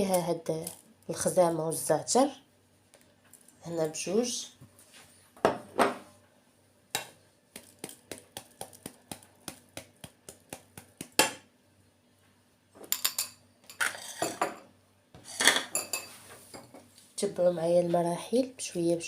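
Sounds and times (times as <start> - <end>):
utensils clinking on pot and dishes: 12.8 - 14.7, 15.3 - 16.8.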